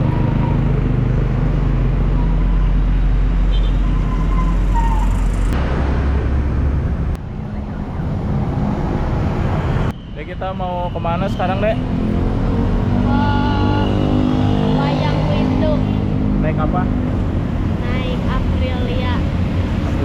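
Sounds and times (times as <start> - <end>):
road traffic noise: 0.0 - 20.0
vehicle engine humming: 0.0 - 20.0.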